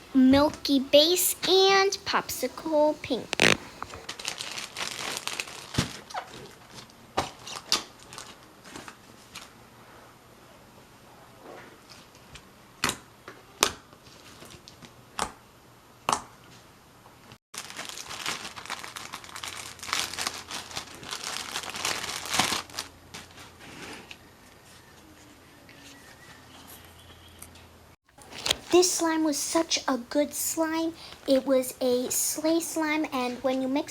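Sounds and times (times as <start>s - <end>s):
slime crinkling and crackling: 2.4s - 9.5s, 17.6s - 24.2s
slime popping: 3.3s - 3.8s.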